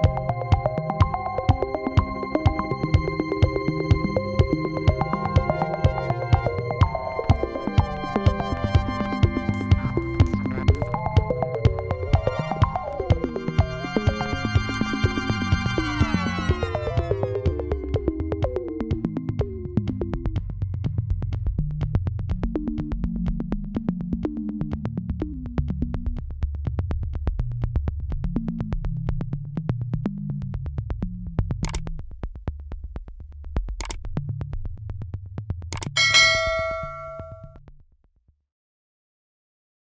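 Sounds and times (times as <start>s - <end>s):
electronic music with steady beat: 1.1s - 17.5s
bell-like ding: 36.0s - 37.5s.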